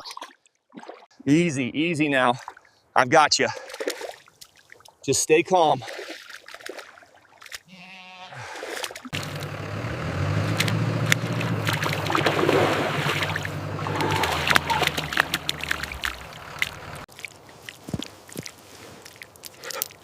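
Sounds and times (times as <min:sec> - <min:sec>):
mud and water splashing: 0:00.0 - 0:01.2, 0:02.2 - 0:20.0
low motor running: 0:09.1 - 0:17.1.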